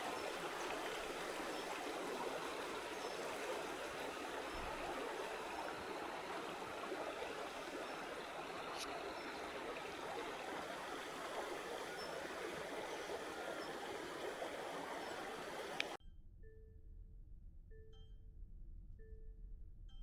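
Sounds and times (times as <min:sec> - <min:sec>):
campfire crackling: 0:00.0 - 0:16.0.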